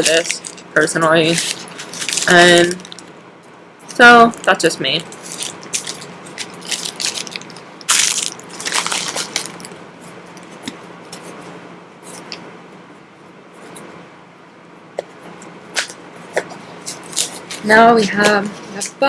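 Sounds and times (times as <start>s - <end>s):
packaging crinkling and rustling: 0.0s - 3.1s, 4.1s - 9.8s.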